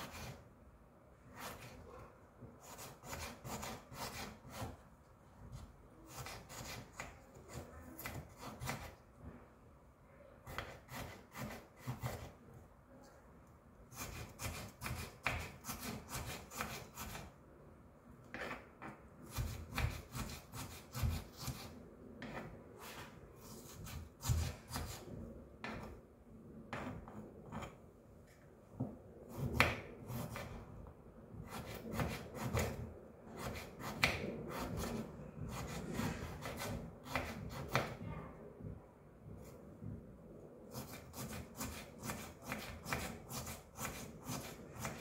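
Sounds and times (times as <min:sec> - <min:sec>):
knife scraping cutting board: 0:00.0 - 0:00.4, 0:01.3 - 0:01.9, 0:02.6 - 0:04.8, 0:10.5 - 0:12.4, 0:18.3 - 0:25.0, 0:26.7 - 0:27.8, 0:33.4 - 0:37.8.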